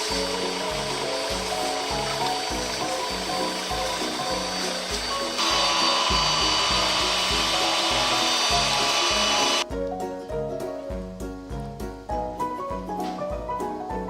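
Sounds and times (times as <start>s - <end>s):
power tool motor whine: 0.0s - 9.6s
background music: 0.0s - 14.0s.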